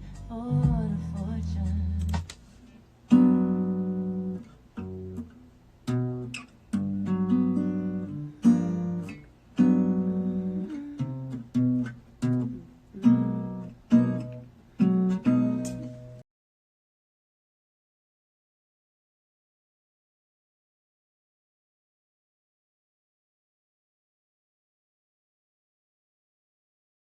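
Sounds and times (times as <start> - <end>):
acoustic guitar chords strummed: 0.0 - 2.3, 3.1 - 16.2.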